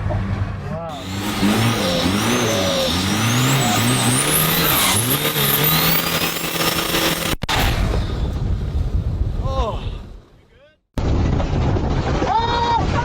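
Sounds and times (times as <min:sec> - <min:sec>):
engine rising and falling: 0:00.9 - 0:08.1.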